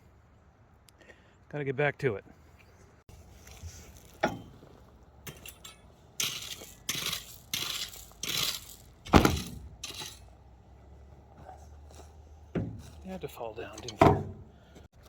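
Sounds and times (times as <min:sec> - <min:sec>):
rake scraping through gravel: 0:03.1 - 0:10.3
rake thumping the ground: 0:05.3 - 0:10.3, 0:12.6 - 0:13.0.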